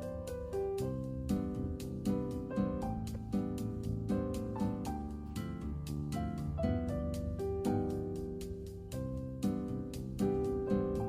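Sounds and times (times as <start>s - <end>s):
instrumental piano music: 0.0s - 11.0s.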